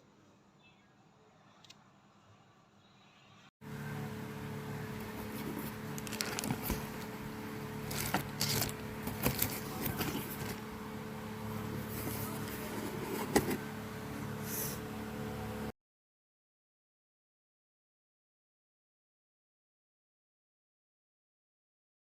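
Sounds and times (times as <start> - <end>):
electric kettle heating water: 3.7 - 15.7.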